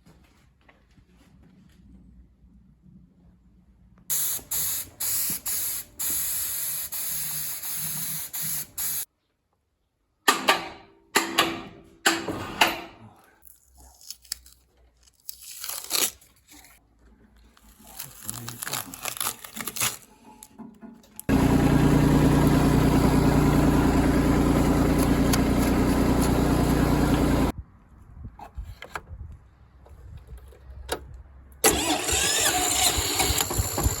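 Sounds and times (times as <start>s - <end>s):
hissing spray bursts: 4.1s - 9.1s.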